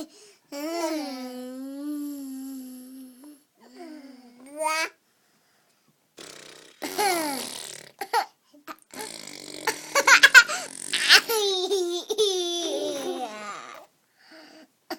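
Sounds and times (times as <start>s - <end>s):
baby squealing: 9.0s - 11.8s
baby giggling: 9.0s - 13.8s.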